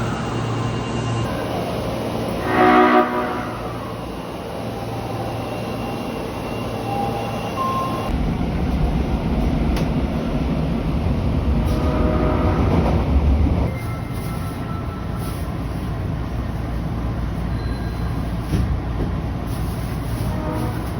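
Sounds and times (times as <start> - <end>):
train wheels and motors rumbling: 0.0 - 20.9
subway train horn: 1.2 - 6.0, 11.5 - 15.8, 19.8 - 20.9.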